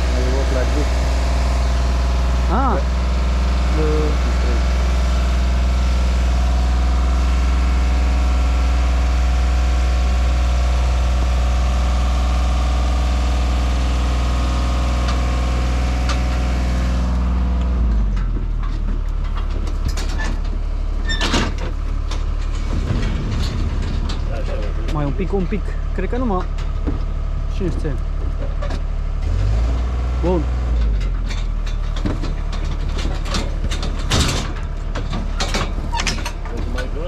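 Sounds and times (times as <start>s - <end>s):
engine humming: 0.0s - 37.0s
sharp clicks and knocks: 17.5s - 28.9s, 30.6s - 37.0s.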